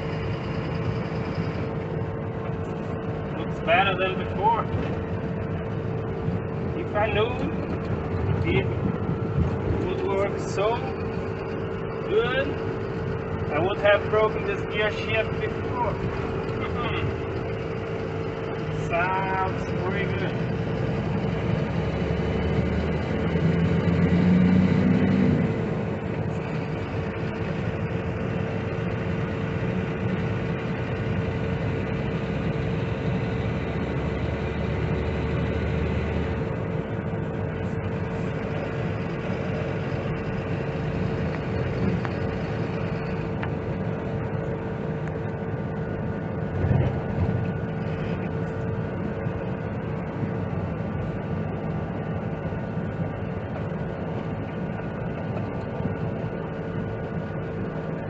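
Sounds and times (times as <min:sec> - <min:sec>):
truck engine running with whine: 0:00.0 - 0:58.0.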